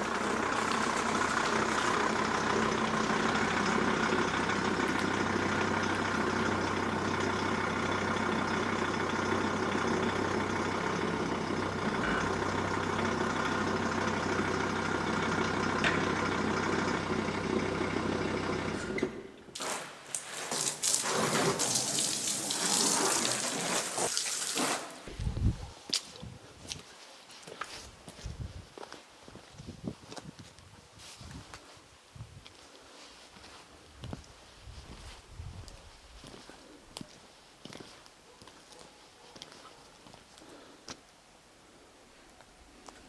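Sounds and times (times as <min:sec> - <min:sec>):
water spray hissing: 0:19.6 - 0:25.1.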